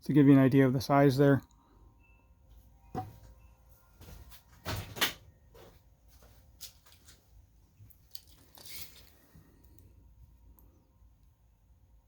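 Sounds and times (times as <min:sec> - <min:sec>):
tools scraping and rustling: 0:08.1 - 0:09.7.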